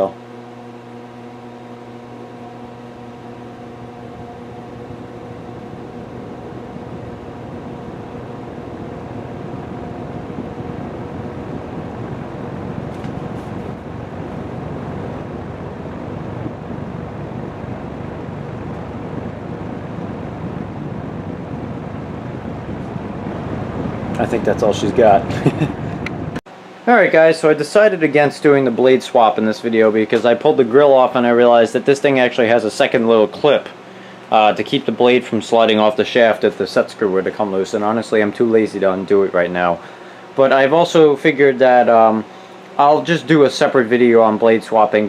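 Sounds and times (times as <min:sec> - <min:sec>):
fan motor humming: 0:00.0 - 0:45.0
rush of air from fan: 0:00.0 - 0:45.0.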